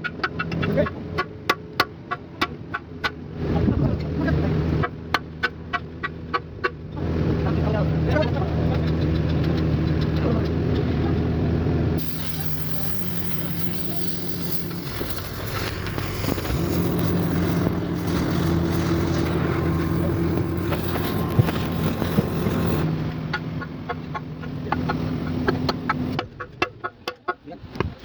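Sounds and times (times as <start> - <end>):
motor humming: 12.0 - 22.9.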